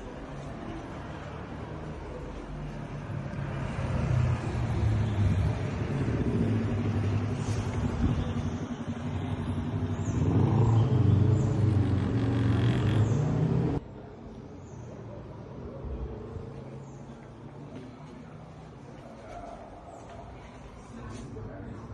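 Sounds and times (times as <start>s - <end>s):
vehicle engine rumble: 0.0s - 14.2s.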